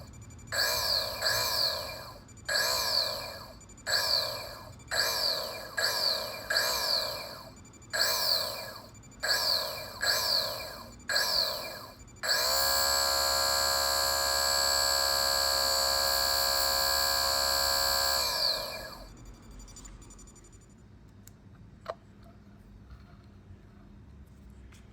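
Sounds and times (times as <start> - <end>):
radiator cooling fan motor whining: 0.0 - 19.7.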